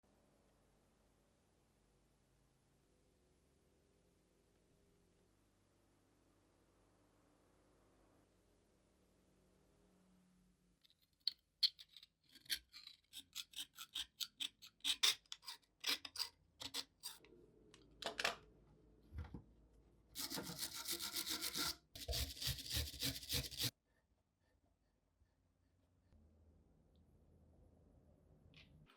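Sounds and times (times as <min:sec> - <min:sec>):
hand scraping rusty metal: 0:20.2 - 0:23.7.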